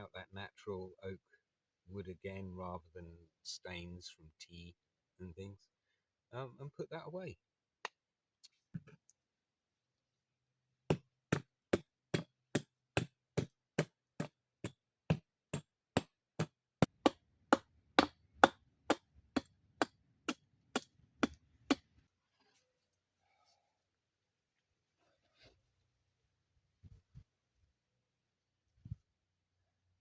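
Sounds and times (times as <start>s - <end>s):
tool chopping wood: 10.9s - 21.9s.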